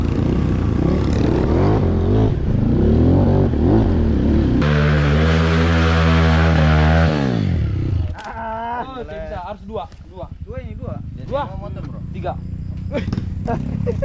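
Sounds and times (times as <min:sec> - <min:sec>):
motorcycle engine revving: 0:00.0 - 0:08.2, 0:09.3 - 0:14.0.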